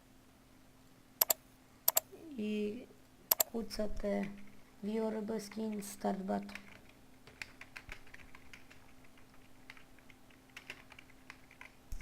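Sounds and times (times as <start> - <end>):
low steady hum: 0.0 - 12.0
keyboard key clicks: 1.2 - 2.0, 3.3 - 3.5.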